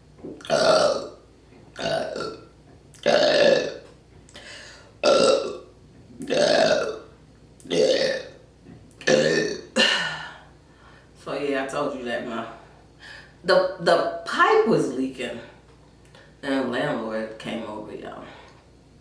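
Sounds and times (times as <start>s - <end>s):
woman burping loudly: 0.4s - 1.2s, 1.8s - 3.8s, 4.4s - 8.4s, 9.0s - 10.4s.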